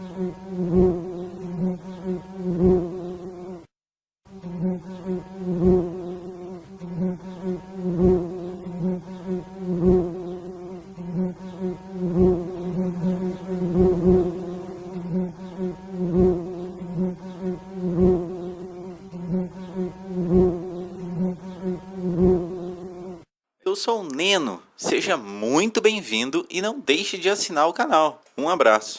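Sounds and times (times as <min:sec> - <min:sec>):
bee buzzing: 0:00.0 - 0:03.7, 0:04.3 - 0:23.3.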